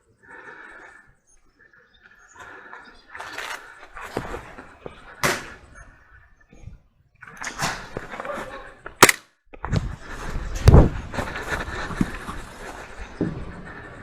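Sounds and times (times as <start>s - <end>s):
airsoft guns firing: 9.0s - 9.2s.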